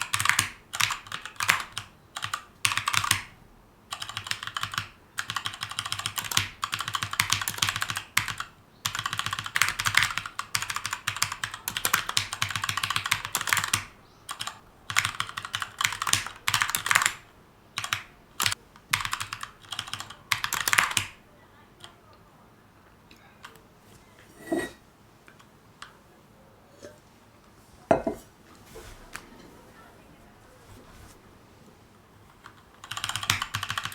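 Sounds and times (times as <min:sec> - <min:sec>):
mechanical keyboard typing: 0:00.0 - 0:17.2, 0:17.8 - 0:21.2, 0:32.4 - 0:33.9.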